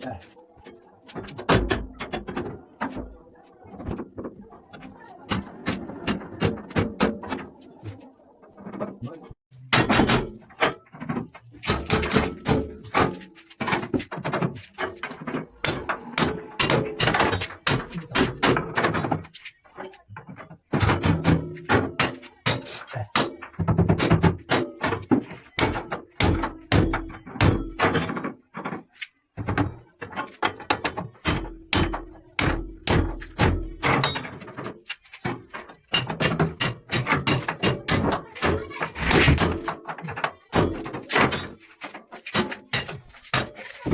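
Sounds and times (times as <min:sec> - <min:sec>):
hammering on metal grill: 0:11.7 - 0:13.2, 0:15.6 - 0:18.8, 0:25.6 - 0:28.1, 0:30.9 - 0:34.3, 0:35.9 - 0:39.7, 0:42.4 - 0:43.6.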